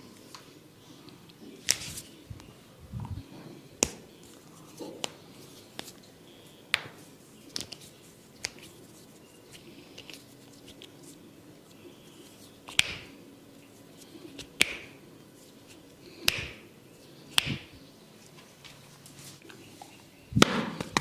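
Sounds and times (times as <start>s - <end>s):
hands snapping: 3.8s - 4.1s, 6.7s - 8.7s, 12.7s - 13.1s, 14.4s - 15.0s, 16.2s - 16.6s, 17.3s - 17.7s, 20.4s - 21.0s.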